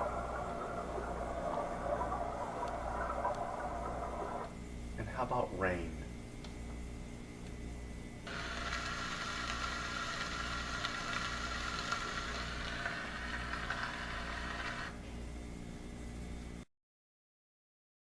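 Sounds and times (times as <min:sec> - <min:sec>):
steady low hum: 0:00.0 - 0:16.7
rain sound through small speaker: 0:08.3 - 0:15.0.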